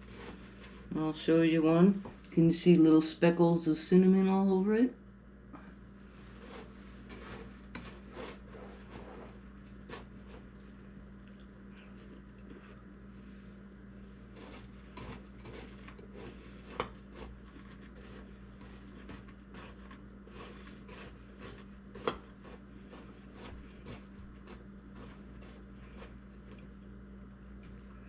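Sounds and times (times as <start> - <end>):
steady low hum: 0.0 - 28.0
cereal crunching: 14.2 - 26.9.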